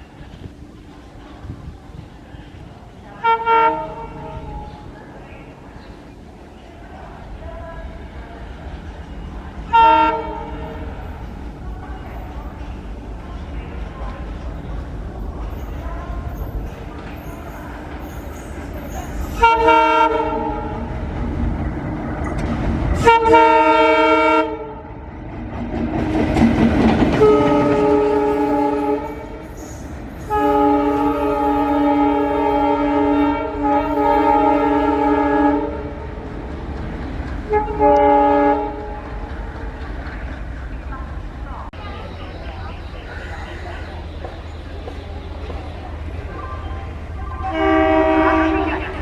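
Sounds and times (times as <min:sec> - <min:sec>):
train rumbling on rails: 0:00.0 - 0:49.0
locomotive horn blasts: 0:03.2 - 0:04.8, 0:09.7 - 0:10.8, 0:19.3 - 0:20.9, 0:23.0 - 0:24.8, 0:27.2 - 0:29.5, 0:30.3 - 0:36.0, 0:37.5 - 0:39.0, 0:47.4 - 0:49.0.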